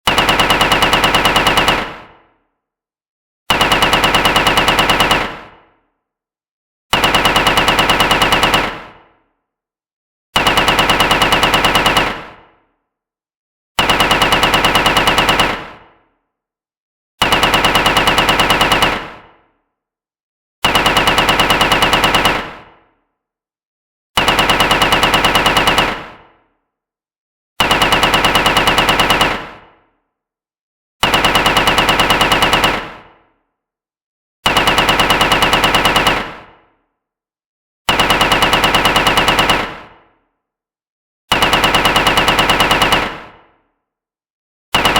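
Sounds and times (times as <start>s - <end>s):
automatic gunfire bursts: 0.1s - 2.0s, 3.5s - 5.5s, 31.0s - 33.0s, 34.4s - 36.4s, 37.9s - 39.8s, 41.3s - 43.3s.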